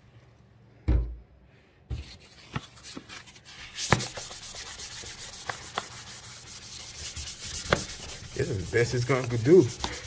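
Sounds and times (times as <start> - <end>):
sponge scrubbing a sink: 2.9 - 10.0.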